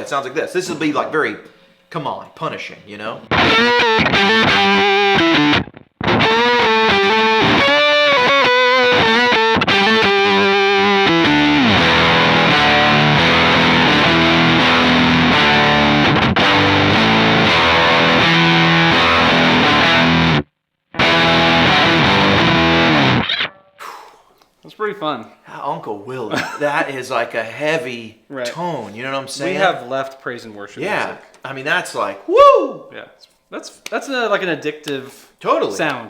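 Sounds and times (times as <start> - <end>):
distorted electric guitar: 3.3 - 23.8.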